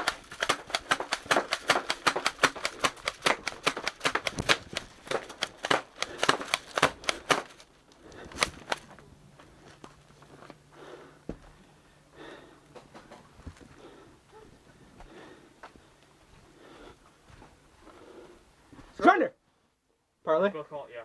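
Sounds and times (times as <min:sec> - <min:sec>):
airsoft guns firing: 0:00.0 - 0:07.7.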